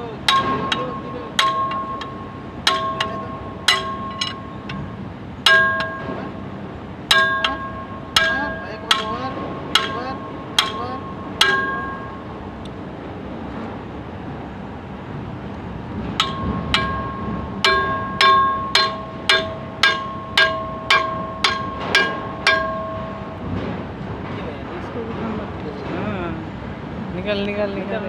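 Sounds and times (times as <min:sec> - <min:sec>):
hammer striking steel: 0:00.0 - 0:12.4, 0:16.2 - 0:23.7.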